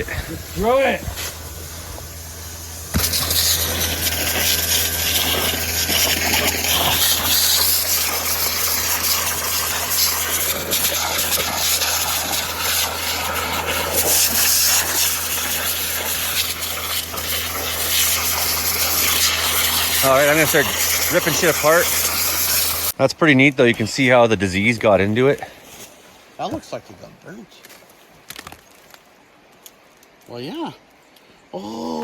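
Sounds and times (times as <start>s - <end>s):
fire hose spraying water: 0.0s - 23.0s.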